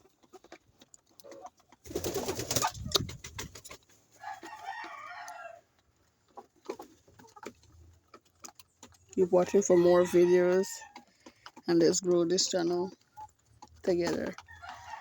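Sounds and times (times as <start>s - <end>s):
hens pecking clicks: 0.0s - 15.0s
chicken drawn-out call: 4.2s - 5.7s, 14.4s - 15.0s.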